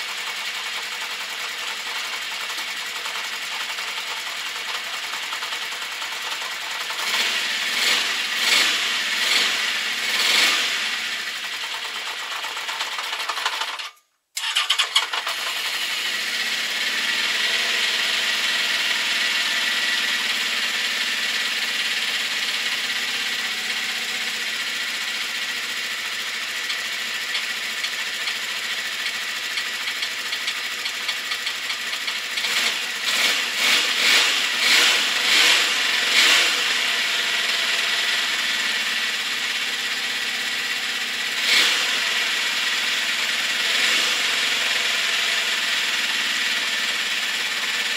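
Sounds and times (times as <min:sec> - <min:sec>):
motorcycle engine running: 0:00.0 - 0:47.9
fast engine valve clicking: 0:11.7 - 0:15.7, 0:26.6 - 0:32.7.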